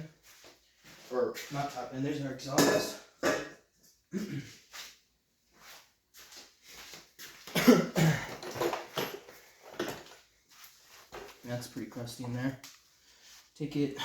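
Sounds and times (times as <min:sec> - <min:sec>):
man coughing: 0:02.6 - 0:04.6, 0:07.5 - 0:08.4.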